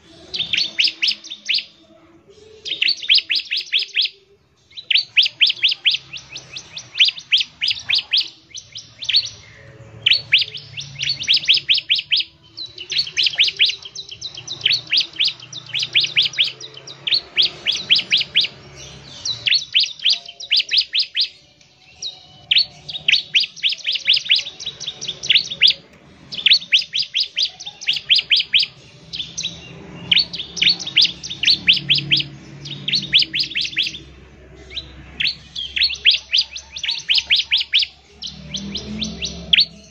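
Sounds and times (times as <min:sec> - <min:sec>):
bird singing high sharp chips: 0:00.0 - 0:39.9.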